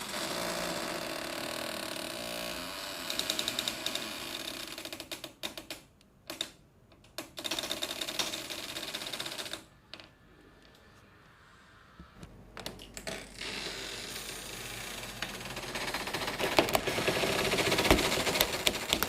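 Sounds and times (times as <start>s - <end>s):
door rattling: 15.0s - 19.0s.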